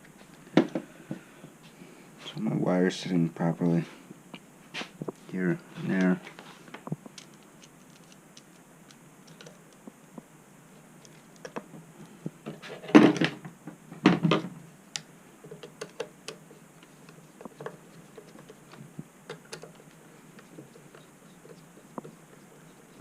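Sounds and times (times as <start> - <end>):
tools clicking and tapping: 15.4 - 16.4, 17.0 - 23.0.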